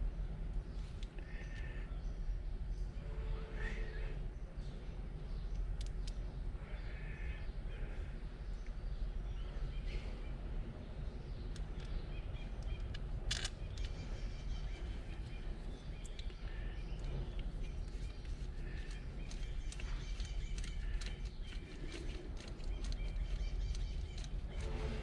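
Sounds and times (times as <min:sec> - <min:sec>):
bird chirps: 0:08.6 - 0:25.0.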